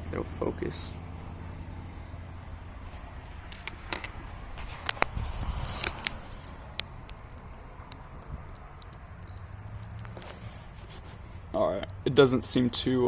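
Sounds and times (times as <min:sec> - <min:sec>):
low background hum: 0:00.0 - 0:12.8
small metallic rattles: 0:03.4 - 0:10.6.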